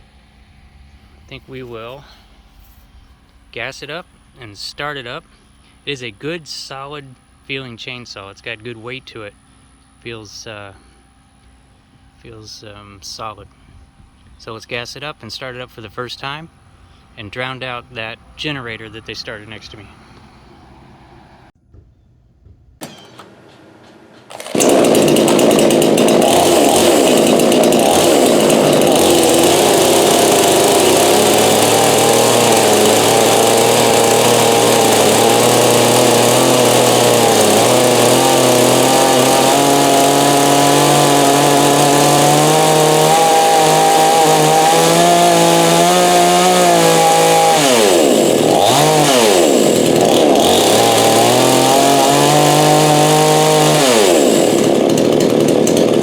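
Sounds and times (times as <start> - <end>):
two-stroke chainsaw engine running: 24.3 - 56.0.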